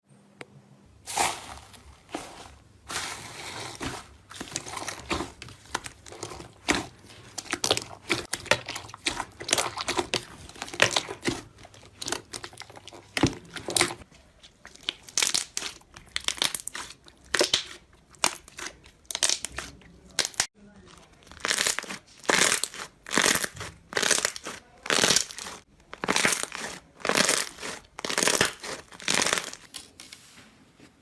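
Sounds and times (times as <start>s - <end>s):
slime crackling and popping: 1.1s - 29.7s.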